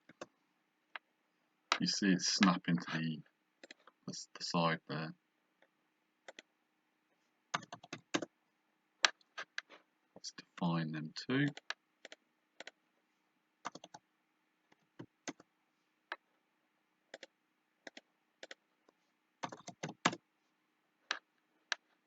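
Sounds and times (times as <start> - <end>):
computer keyboard key presses: 7.6 - 8.3, 13.7 - 14.0, 19.4 - 20.2.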